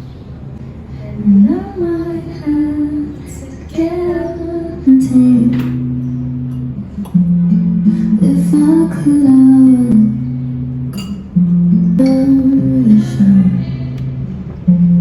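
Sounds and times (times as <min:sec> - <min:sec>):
person singing long notes: 0:00.9 - 0:15.0
instrumental backing: 0:03.7 - 0:15.0.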